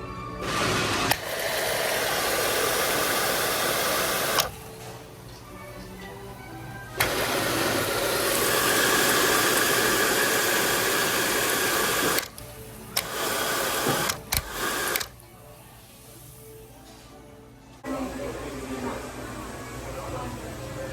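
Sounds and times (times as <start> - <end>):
hand dryer blowing: 0.4 - 4.6, 7.0 - 12.3, 13.0 - 15.1.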